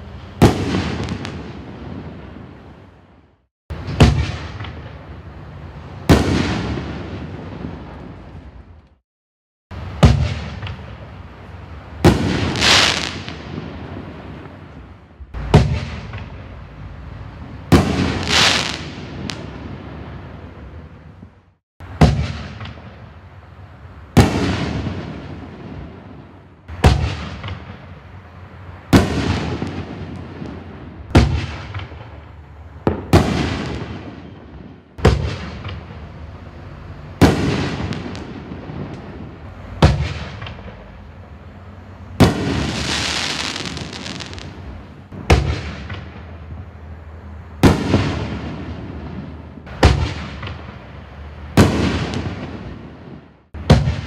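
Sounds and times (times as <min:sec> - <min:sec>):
firework shells booming: 0:03.7 - 0:05.2, 0:06.0 - 0:08.2, 0:09.7 - 0:11.2, 0:12.0 - 0:16.6, 0:17.6 - 0:20.3, 0:21.8 - 0:23.1, 0:24.1 - 0:28.0, 0:28.9 - 0:36.1, 0:37.2 - 0:41.3, 0:42.1 - 0:46.7, 0:47.6 - 0:50.9, 0:51.5 - 0:54.0
firework hiss: 0:09.7 - 0:14.8, 0:15.4 - 0:20.7, 0:35.0 - 0:46.2.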